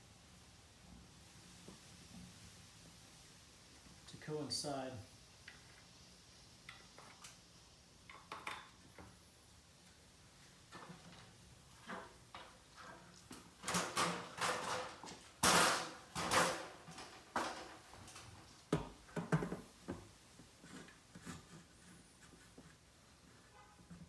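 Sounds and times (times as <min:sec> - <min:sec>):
pencil scraping on drywall: 0:20.6 - 0:24.0.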